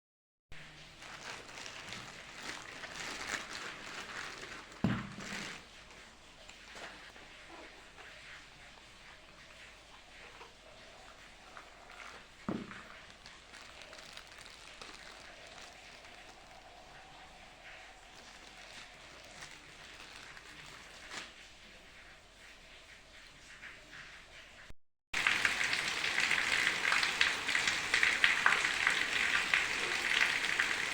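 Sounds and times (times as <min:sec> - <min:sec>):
packaging crinkling: 0:00.6 - 0:07.6, 0:11.4 - 0:21.4
thump: 0:04.8 - 0:05.3.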